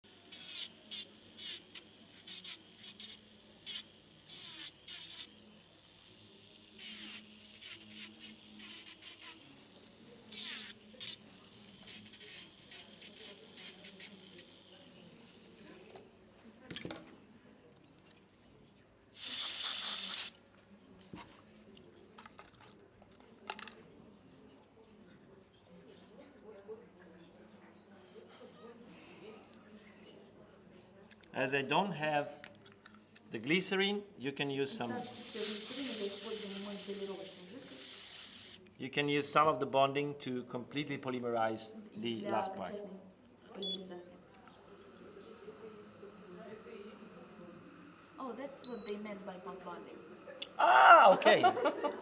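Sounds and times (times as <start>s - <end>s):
compressed air hiss: 19.2s - 20.3s, 34.9s - 38.6s.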